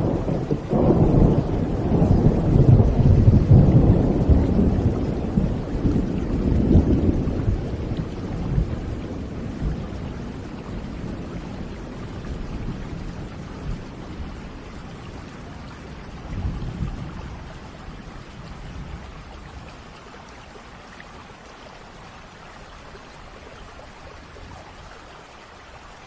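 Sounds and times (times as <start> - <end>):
rolling thunder: 0.0 - 19.7
steady rain: 0.0 - 26.0.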